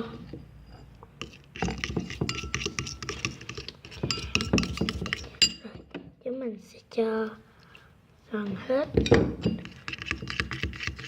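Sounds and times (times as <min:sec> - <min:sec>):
metal spoon clinking on glass bowl: 0:01.6 - 0:03.2, 0:04.0 - 0:05.6.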